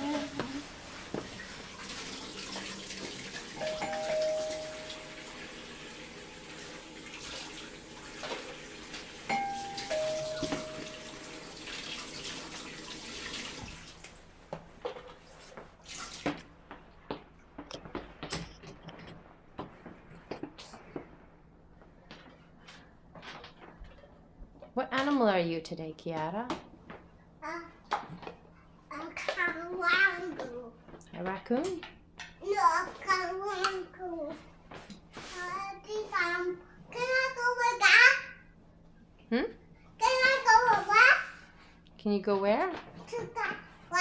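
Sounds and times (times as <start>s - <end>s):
two-tone doorbell chime: 3.6s - 5.7s, 9.3s - 11.6s.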